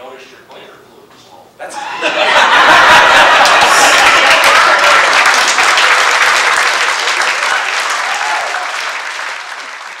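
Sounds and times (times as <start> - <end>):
audience applauding: 2.5 - 10.0.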